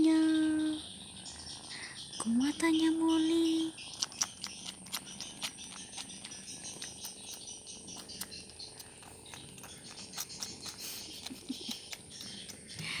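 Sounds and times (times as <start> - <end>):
cats purring: 0.0 - 13.0
small irregular clicks: 3.8 - 13.0.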